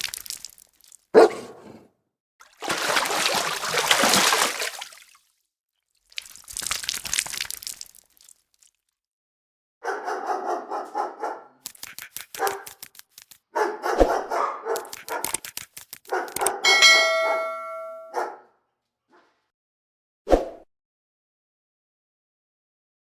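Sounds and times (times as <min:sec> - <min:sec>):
steady ringing tone: 0:16.7 - 0:18.1.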